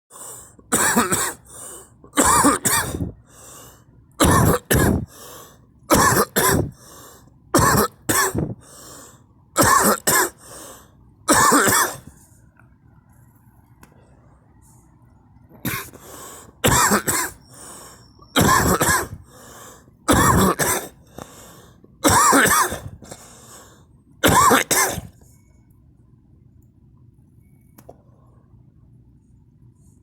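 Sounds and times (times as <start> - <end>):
person coughing: 0.7 - 1.5, 2.1 - 3.2, 4.2 - 5.1, 5.9 - 6.8, 7.6 - 8.6, 9.6 - 10.4, 11.3 - 12.1, 15.6 - 16.0, 16.6 - 17.5, 18.4 - 19.3, 20.1 - 21.0, 22.0 - 23.3, 24.2 - 25.2.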